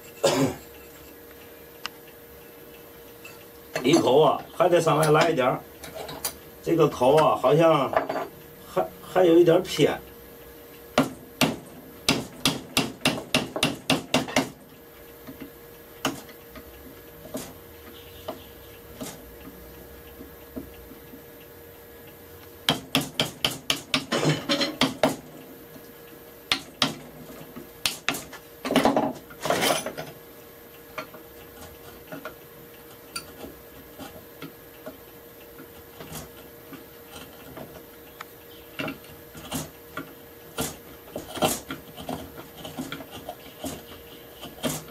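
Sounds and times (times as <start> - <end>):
hammer tapping chisel into wood: 11.0 - 14.6
rasping on wood: 40.6 - 44.9.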